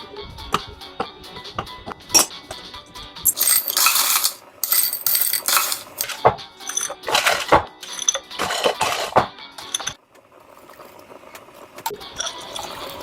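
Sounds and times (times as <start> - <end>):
coffee beans rattling against metal: 3.3 - 6.1
sharp metallic clinks: 3.3 - 6.1.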